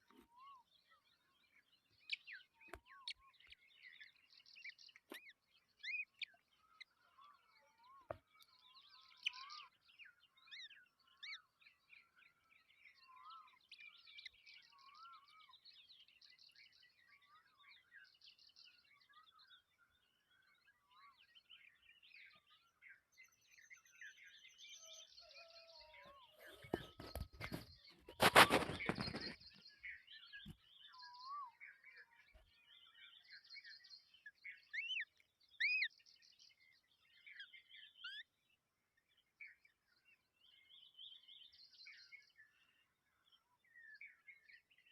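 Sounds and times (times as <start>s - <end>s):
loud rustling scrape: 26.4s - 29.5s.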